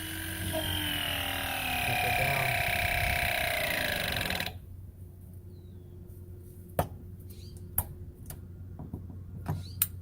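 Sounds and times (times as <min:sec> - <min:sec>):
press tool motor running: 0:00.0 - 0:04.6.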